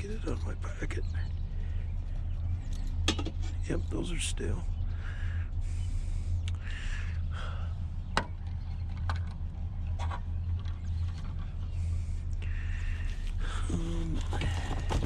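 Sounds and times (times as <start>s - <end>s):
steady low hum: 0.0s - 15.0s
scrap items clicking and knocking: 14.2s - 15.0s.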